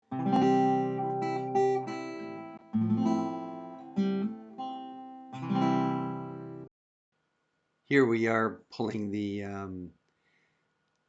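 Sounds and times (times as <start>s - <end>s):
acoustic guitar strummed chords: 0.1s - 6.7s.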